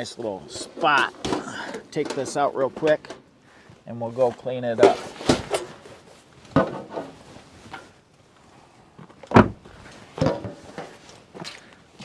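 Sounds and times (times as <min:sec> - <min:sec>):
handling knocks: 0:00.0 - 0:03.2, 0:04.8 - 0:05.9.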